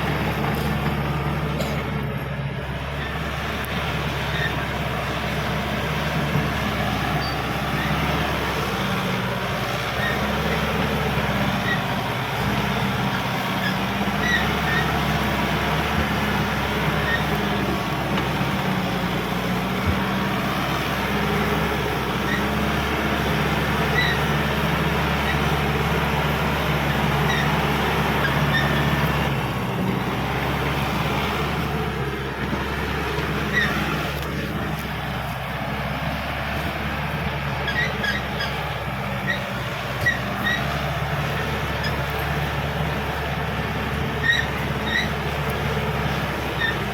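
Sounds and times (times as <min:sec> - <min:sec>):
bulldozer diesel engine running: 0:00.0 - 0:46.9
high squeaks: 0:07.1 - 0:07.9, 0:27.2 - 0:27.6, 0:37.6 - 0:38.6, 0:39.2 - 0:40.8, 0:44.2 - 0:45.2.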